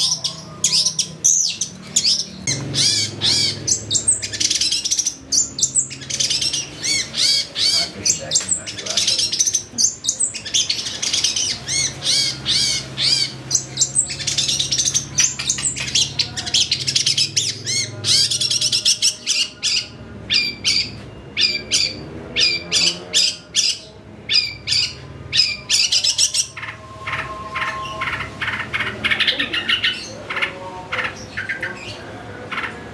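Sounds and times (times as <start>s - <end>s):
shrike singing harsh notes: 8.8s - 30.1s.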